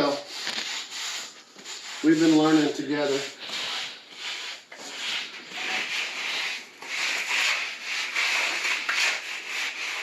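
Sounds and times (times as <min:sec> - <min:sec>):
scrubbing on floor tile: 0:00.0 - 0:10.0.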